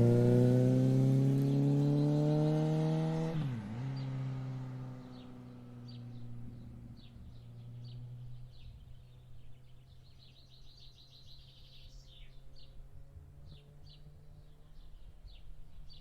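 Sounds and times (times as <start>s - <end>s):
motorcycle engine revving: 0.0s - 9.1s
birds chirping faintly: 0.0s - 16.0s.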